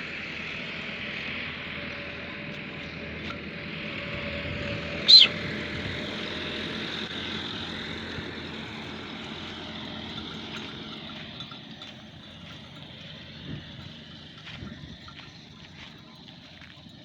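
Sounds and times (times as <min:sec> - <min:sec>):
vehicle engine running: 0:00.0 - 0:17.0
faint clinks: 0:08.8 - 0:17.0.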